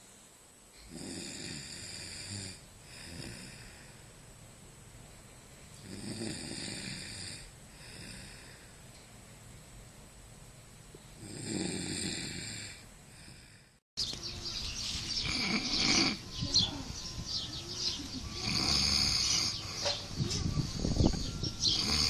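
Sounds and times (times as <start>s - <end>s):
person snoring: 0.9s - 3.9s, 5.8s - 8.7s, 11.2s - 13.8s, 15.2s - 16.2s, 18.4s - 19.8s, 21.7s - 22.0s.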